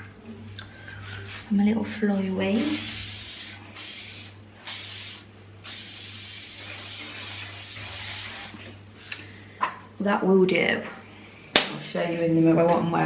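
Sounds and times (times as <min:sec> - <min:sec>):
aerosol can spraying: 0:02.6 - 0:08.7.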